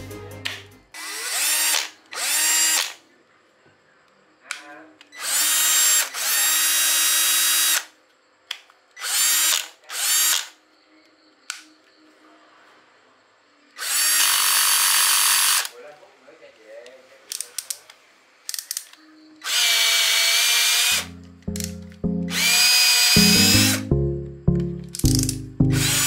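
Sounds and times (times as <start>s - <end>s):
cordless drill motor whine: 1.0s - 2.9s, 5.2s - 7.9s, 9.0s - 10.5s, 13.8s - 15.7s, 19.4s - 21.1s, 22.3s - 23.8s, 25.8s - 26.0s.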